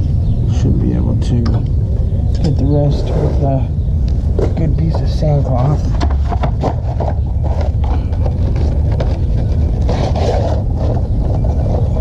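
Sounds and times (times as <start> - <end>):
low rumble: 0.0 - 12.0
sandcloth scraping copper pipe: 9.5 - 12.0.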